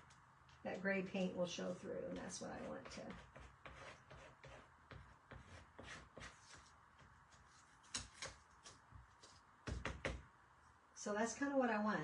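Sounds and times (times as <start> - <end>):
paint scraper scratching paint: 2.0 - 6.7.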